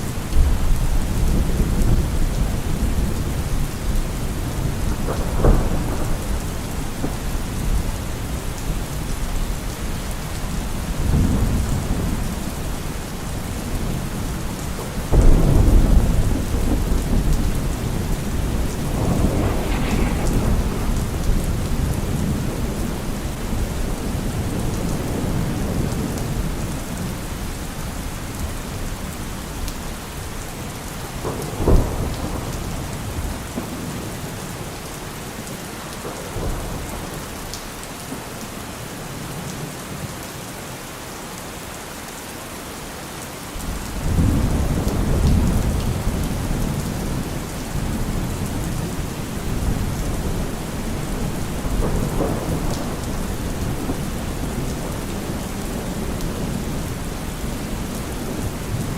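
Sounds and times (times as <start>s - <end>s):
low rolling thunder: 0.0s - 34.7s, 43.6s - 58.9s
steady rain: 0.0s - 58.9s
sharp thunderclap: 4.2s - 8.4s, 15.1s - 26.5s.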